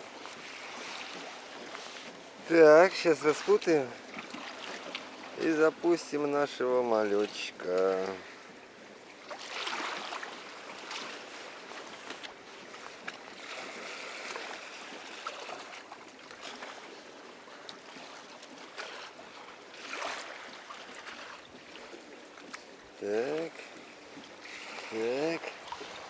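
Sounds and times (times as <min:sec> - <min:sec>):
river water lapping and splashing: 0:00.0 - 0:26.0.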